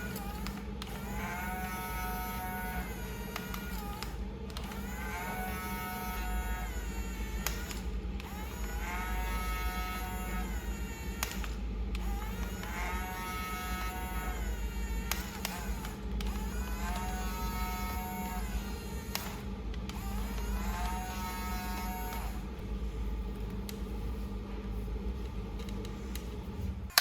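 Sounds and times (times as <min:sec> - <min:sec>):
toy electric motor whining: 0:00.0 - 0:22.6
constant low hum: 0:00.0 - 0:27.0
click: 0:03.3 - 0:04.9, 0:11.2 - 0:12.1, 0:15.1 - 0:17.1, 0:19.1 - 0:21.0.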